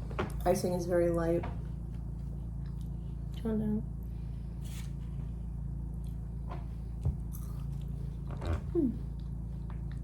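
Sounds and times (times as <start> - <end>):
steady low hum: 0.0 - 10.0
person chewing a cookie: 2.4 - 3.4, 7.2 - 8.5, 9.1 - 10.0
person humming mm: 8.6 - 9.1.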